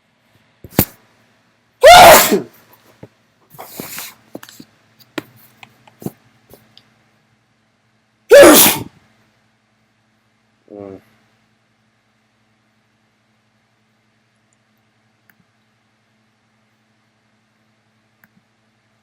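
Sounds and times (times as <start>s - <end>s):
man sneezing: 1.8s - 2.5s, 8.3s - 8.9s.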